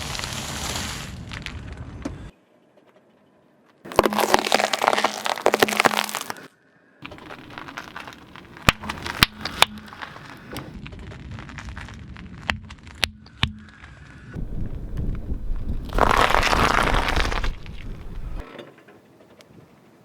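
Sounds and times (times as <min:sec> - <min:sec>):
objects crunching under car tyre: 0:00.0 - 0:02.3, 0:03.9 - 0:13.8, 0:14.4 - 0:18.5
low rumble: 0:09.7 - 0:18.4.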